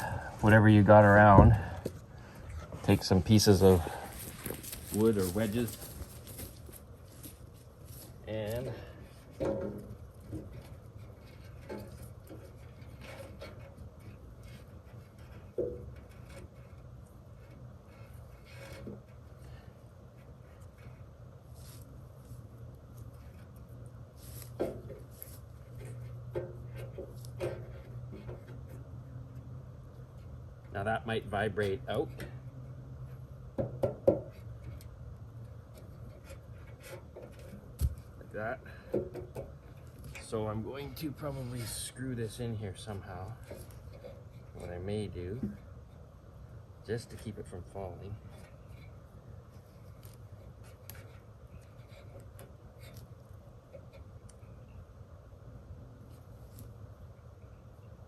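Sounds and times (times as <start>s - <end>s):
wood knocking and scraping: 0.9s - 3.3s, 9.0s - 19.5s, 24.2s - 29.6s, 33.0s - 34.9s, 35.6s - 41.8s, 42.8s - 45.8s
light rubbing and faint taps: 0.9s - 19.5s
wood block knocks: 33.5s - 34.3s.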